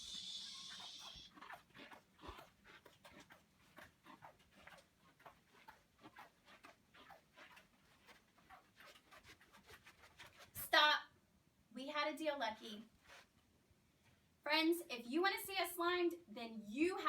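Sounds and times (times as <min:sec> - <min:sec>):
short hiss: 0:00.0 - 0:01.3
dog claws clicking on floor: 0:01.3 - 0:10.5.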